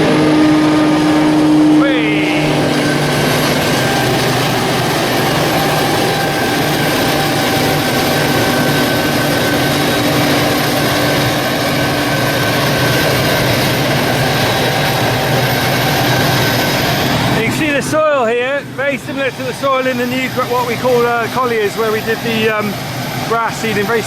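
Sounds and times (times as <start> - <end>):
engine droning hum: 0.0 - 24.0.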